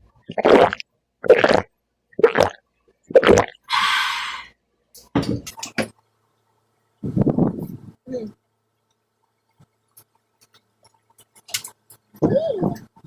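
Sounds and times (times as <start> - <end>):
person gulping a drink: 0.2 - 3.7
breathy exhale: 3.7 - 4.6.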